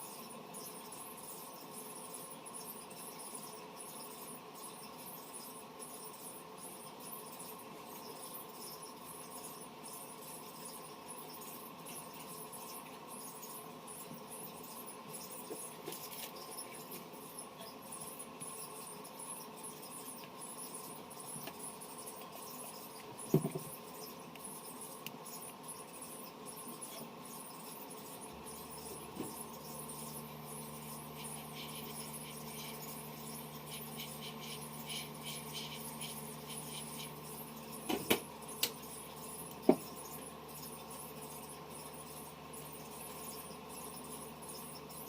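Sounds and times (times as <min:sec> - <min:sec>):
electrical hum and hiss: 0:00.0 - 0:45.0
sharp small clicks and taps: 0:23.3 - 0:25.6, 0:37.9 - 0:38.8.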